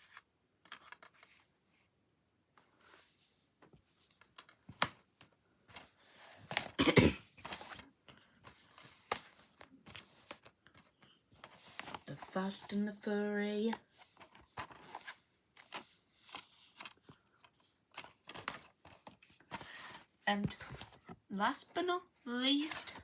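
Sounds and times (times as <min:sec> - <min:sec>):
plastic cases clicking and rustling: 0:00.0 - 0:01.4, 0:13.7 - 0:21.2.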